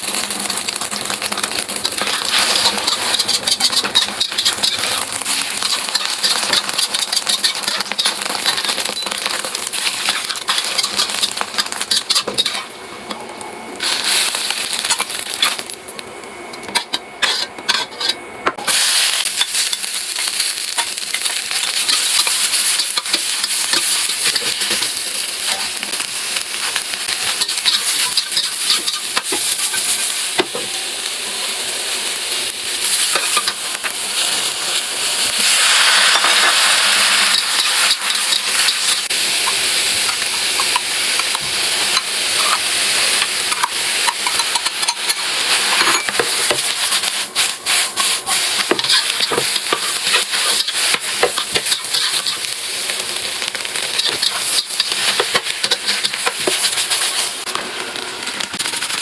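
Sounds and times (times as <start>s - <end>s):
food sizzling in a pan: 0.0s - 15.9s, 16.6s - 59.0s
spatula scraping a pan: 1.9s - 9.0s, 17.2s - 18.2s, 47.8s - 52.5s, 53.9s - 57.4s.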